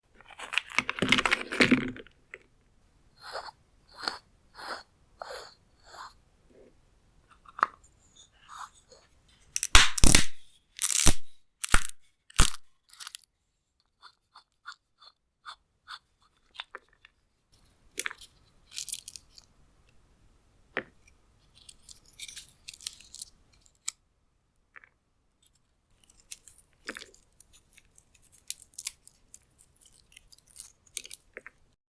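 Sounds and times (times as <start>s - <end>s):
walnut shells cracking: 9.6s - 13.2s.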